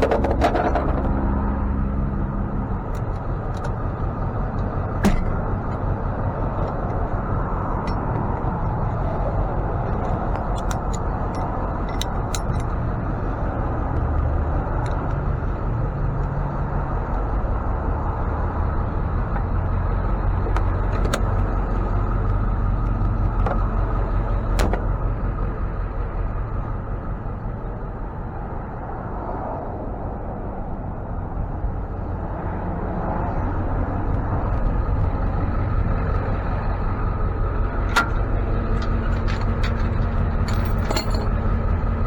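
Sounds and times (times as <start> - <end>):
clicks and rattles: 0.0 - 1.6, 2.8 - 13.2, 20.3 - 25.0, 37.8 - 41.6
truck engine running: 0.0 - 28.8, 30.9 - 42.0
road noise: 0.0 - 42.0.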